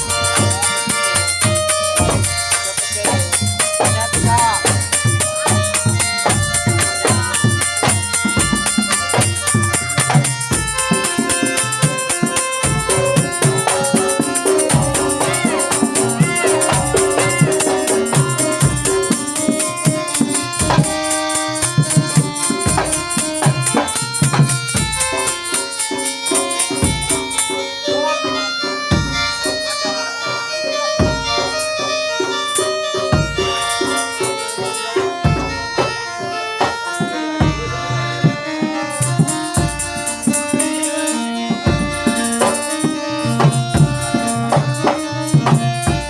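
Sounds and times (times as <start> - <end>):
jingling rattles or bells: 0.0 - 28.6
hand drums beating: 0.0 - 46.0
pitched melodic instruments: 0.0 - 46.0.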